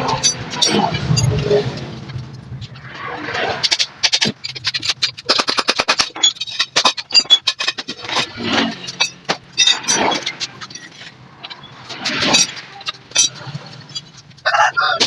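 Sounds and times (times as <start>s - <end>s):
tools clicking and knocking: 3.6s - 14.4s.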